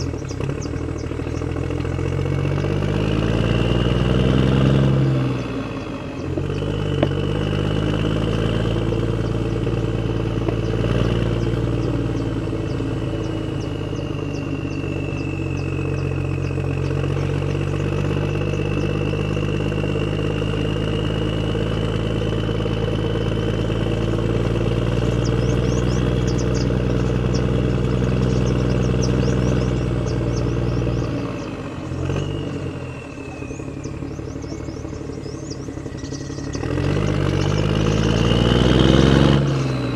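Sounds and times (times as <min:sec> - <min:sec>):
engine-like drone: 0:00.0 - 0:39.9
high motor whine: 0:00.0 - 0:39.9.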